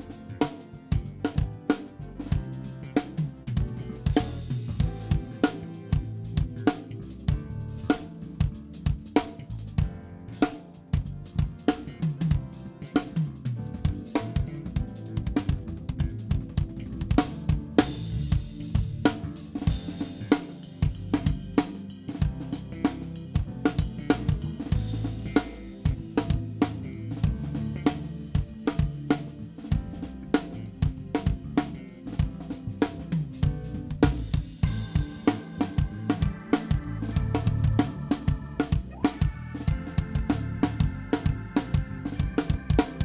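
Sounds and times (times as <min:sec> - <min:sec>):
drum kit played busily: 0:00.0 - 0:43.0
electric bass line: 0:00.0 - 0:43.0.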